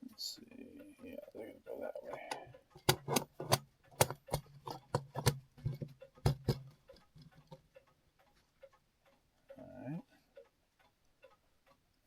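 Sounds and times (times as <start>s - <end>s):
clicks and knocks of clock parts: 2.1s - 9.7s.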